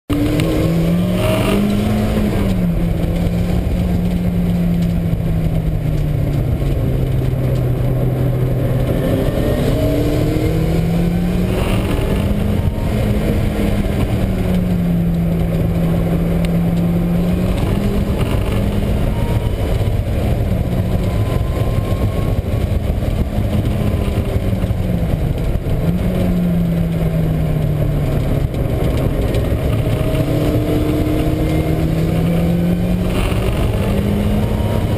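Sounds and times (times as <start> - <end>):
car engine revving: 0.1 - 34.9
road and wind noise: 0.1 - 34.9
wheel bearing noise: 0.1 - 34.9.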